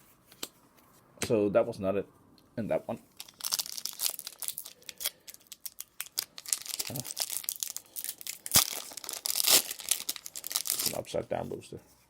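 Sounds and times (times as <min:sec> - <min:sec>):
foil wrapper crinkling and tearing: 0:03.1 - 0:11.2.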